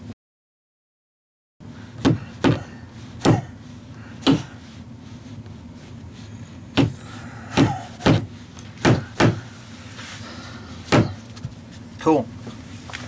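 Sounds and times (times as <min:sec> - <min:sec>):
low steady hum: 0:01.6 - 0:13.0
sharp knocks: 0:02.0 - 0:03.5, 0:06.8 - 0:09.5, 0:10.9 - 0:11.2.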